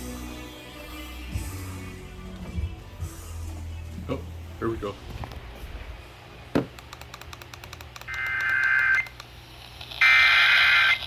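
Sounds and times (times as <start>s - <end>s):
click and ticks: 6.8s - 9.3s
electronic data tone bursts: 8.1s - 9.1s, 10.0s - 11.0s.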